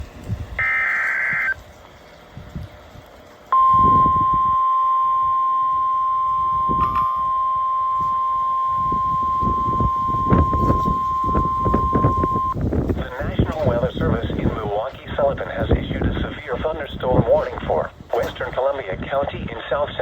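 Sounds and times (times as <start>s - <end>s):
steady single-pitch alarm tone: 0.6s - 1.6s, 3.5s - 12.6s
warbling digital data tones: 0.6s - 1.6s, 3.6s - 13.4s.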